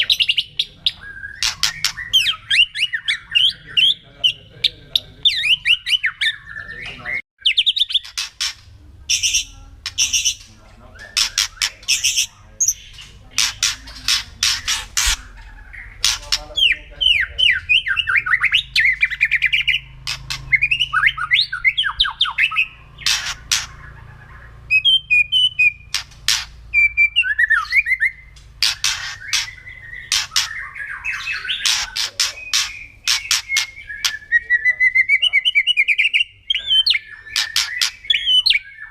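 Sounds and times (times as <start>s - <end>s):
bird whistled phrases: 0.0s - 4.0s, 20.5s - 26.0s, 26.7s - 38.9s
bird harsh crackling rattles: 7.9s - 12.2s, 12.9s - 16.7s, 20.0s - 20.6s, 23.0s - 23.8s, 25.8s - 26.7s, 28.4s - 30.7s.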